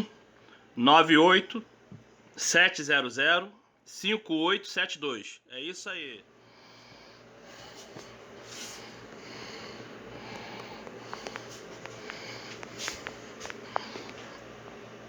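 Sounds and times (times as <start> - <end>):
soft breathing or sniffing: 6.4 - 14.4.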